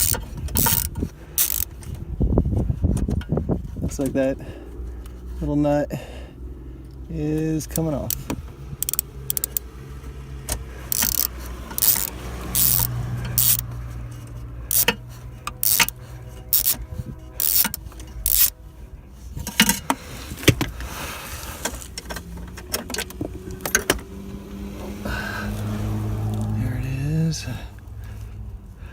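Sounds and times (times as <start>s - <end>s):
low steady hum: 0.0s - 28.9s
hand tools clinking against metal: 10.9s - 18.5s.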